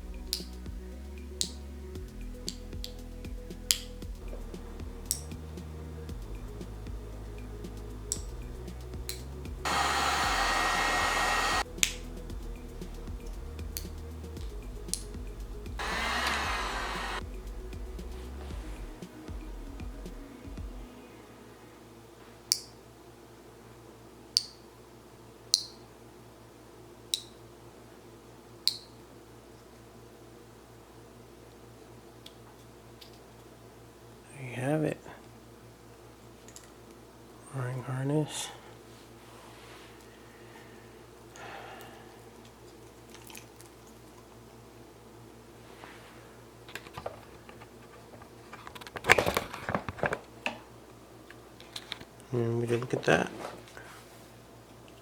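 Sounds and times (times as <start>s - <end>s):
faint steady hum: 0.0s - 55.0s
wiring harness clicks and rustles: 46.6s - 50.6s, 51.3s - 53.8s.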